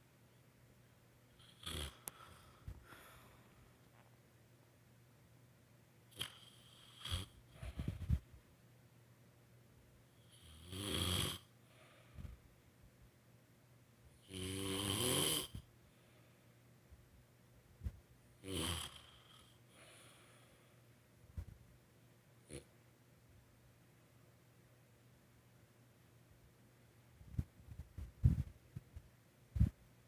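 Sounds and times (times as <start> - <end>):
woman snoring: 1.4 - 2.5, 6.2 - 7.4, 10.3 - 11.5, 14.2 - 15.6, 18.4 - 20.2.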